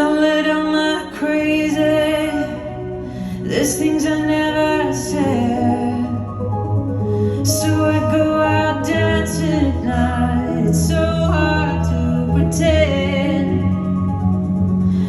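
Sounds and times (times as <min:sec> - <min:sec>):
person singing: 0:00.0 - 0:06.5, 0:07.2 - 0:15.0
sustained instrumental backing: 0:00.0 - 0:15.0.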